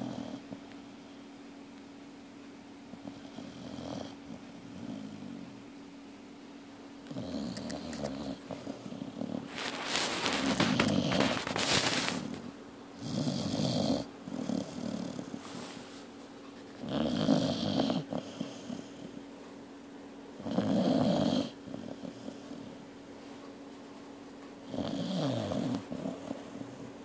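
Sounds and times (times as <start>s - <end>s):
person snoring: 7.1s - 9.5s, 16.8s - 18.9s, 20.4s - 22.7s, 24.7s - 26.4s
quiet breathing: 14.4s - 16.2s, 21.5s - 23.5s.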